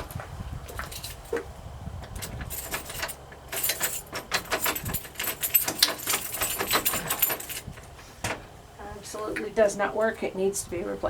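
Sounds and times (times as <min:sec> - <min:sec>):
key jiggling in lock: 0:00.7 - 0:01.4, 0:02.0 - 0:07.9
door knob rattling: 0:02.1 - 0:07.7.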